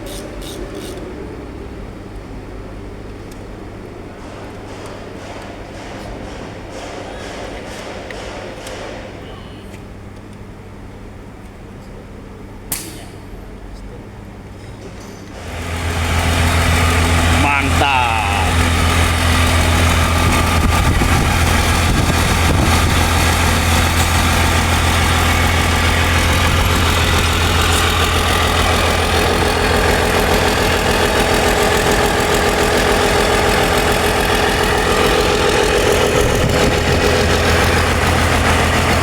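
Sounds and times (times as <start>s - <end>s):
engine idling: 15.4s - 39.0s.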